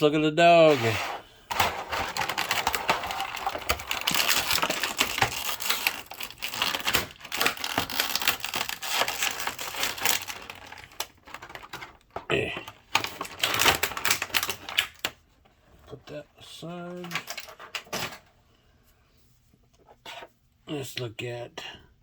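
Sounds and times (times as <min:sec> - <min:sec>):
plastic packaging crinkling: 0:01.5 - 0:15.2.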